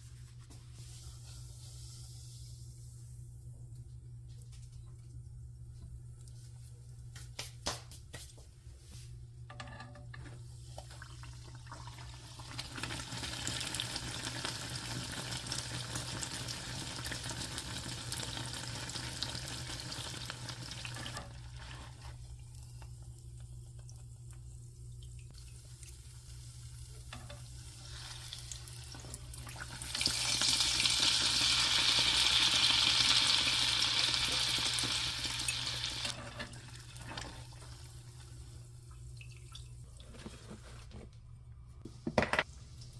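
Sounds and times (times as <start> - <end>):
low steady hum: 0.0 - 13.0, 20.9 - 30.9
dough sizzling in hot oil: 12.4 - 23.3, 25.3 - 36.2.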